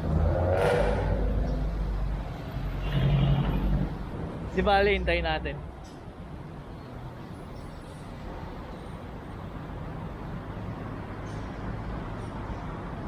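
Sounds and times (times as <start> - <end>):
road noise: 0.0 - 13.0.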